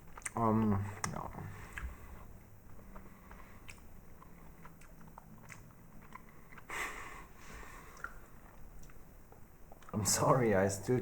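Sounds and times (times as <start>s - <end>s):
chewing gummy candy: 0.0s - 2.0s, 2.6s - 7.0s
wet mouth clicks: 0.0s - 2.0s, 2.7s - 6.8s, 7.9s - 9.0s.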